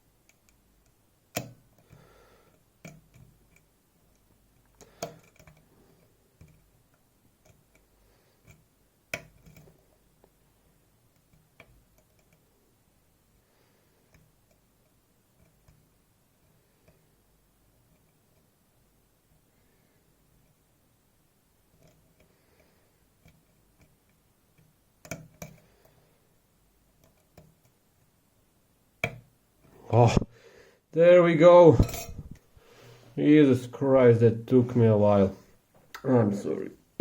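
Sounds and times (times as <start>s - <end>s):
lock pick clicking on pins: 0.2s - 2.0s, 2.8s - 5.7s, 24.6s - 25.6s.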